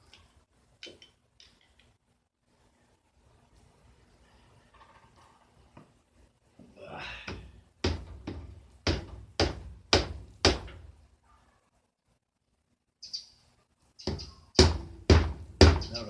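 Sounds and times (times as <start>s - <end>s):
sharp knocks on metal: 7.3s - 10.9s, 14.0s - 16.0s.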